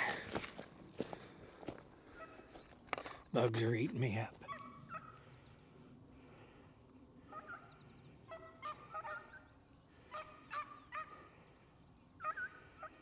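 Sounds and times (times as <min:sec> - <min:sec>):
hounds baying faintly: 0:02.1 - 0:02.6, 0:04.4 - 0:05.5, 0:07.2 - 0:11.4, 0:12.2 - 0:13.0.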